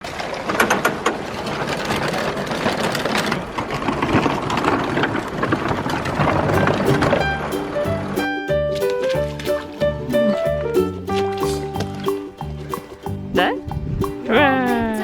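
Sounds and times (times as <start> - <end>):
rattling and clicks: 0.0 - 8.1.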